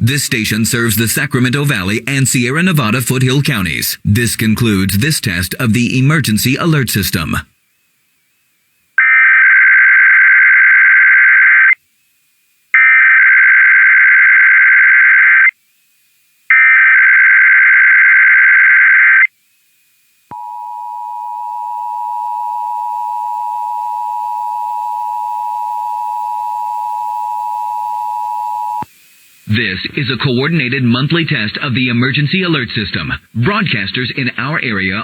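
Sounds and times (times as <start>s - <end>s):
two-tone attention signal: 20.3s - 28.8s.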